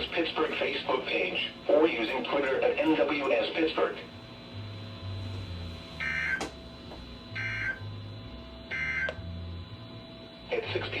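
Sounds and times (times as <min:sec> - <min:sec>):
digital data tone bursts: 0:07.3 - 0:07.8, 0:08.7 - 0:09.2.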